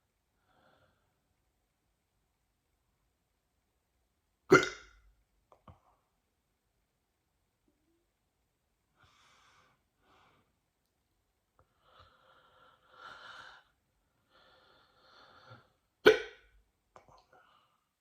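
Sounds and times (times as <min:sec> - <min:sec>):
person breathing softly: 0:00.3 - 0:01.2, 0:08.9 - 0:10.6, 0:11.6 - 0:15.9, 0:17.1 - 0:18.0
person hiccuping: 0:04.5 - 0:05.0, 0:16.0 - 0:16.4.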